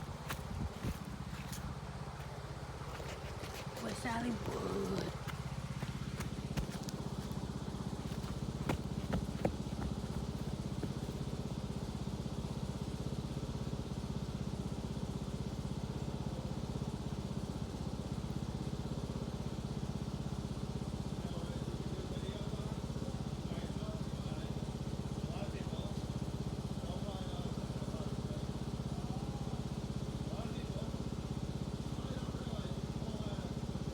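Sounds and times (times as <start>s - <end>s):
lawn mower engine running: 0.0s - 11.4s.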